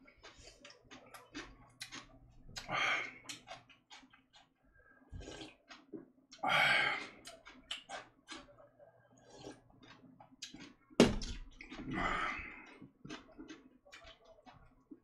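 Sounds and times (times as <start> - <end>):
wet chewing: 0.0 - 15.0
mouth clicks: 5.2 - 8.5
sharp knock: 11.0 - 11.3.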